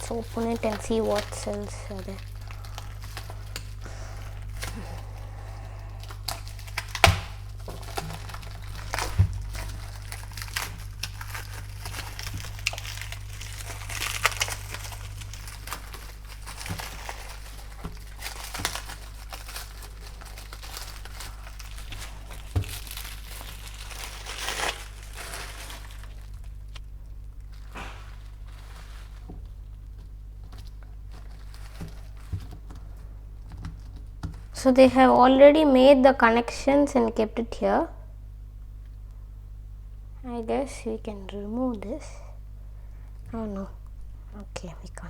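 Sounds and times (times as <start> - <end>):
plastic packaging crinkling: 0.0 - 36.8
low hum: 0.0 - 45.0.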